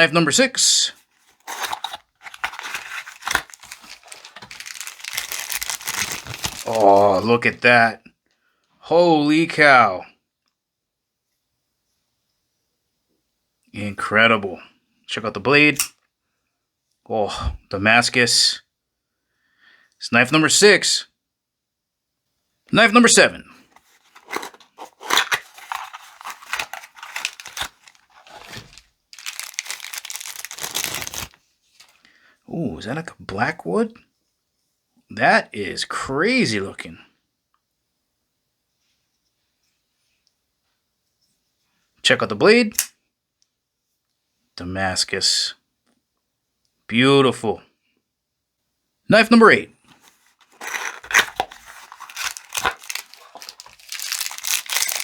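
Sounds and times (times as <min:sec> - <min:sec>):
packaging crinkling and rustling: 0:01.1 - 0:07.4, 0:23.7 - 0:32.0, 0:49.9 - 0:55.0
packaging tearing: 0:01.2 - 0:07.3, 0:23.7 - 0:32.0, 0:49.9 - 0:55.0.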